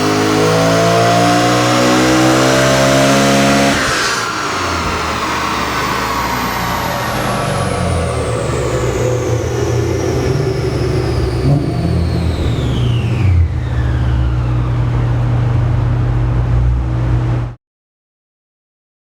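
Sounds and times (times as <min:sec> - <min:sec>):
car engine running low: 0:00.0 - 0:17.6
high whine falling in pitch: 0:04.2 - 0:17.6.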